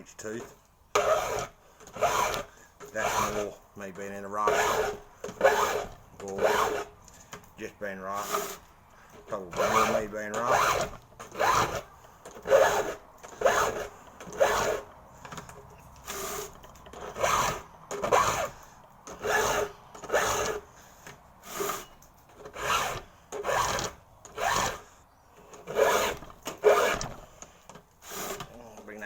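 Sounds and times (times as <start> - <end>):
file rasping across saw chain: 0.2 - 29.0.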